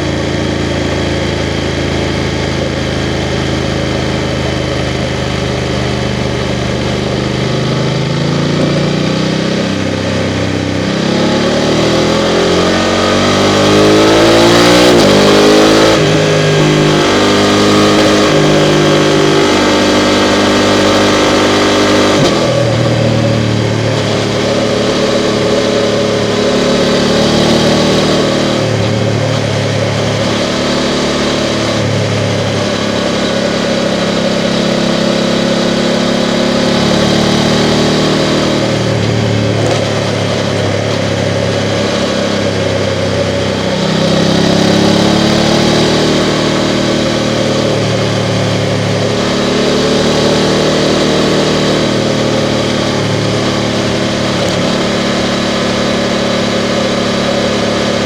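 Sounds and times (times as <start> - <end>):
motorcycle engine running: 0.0 - 58.0
road noise: 0.0 - 58.0.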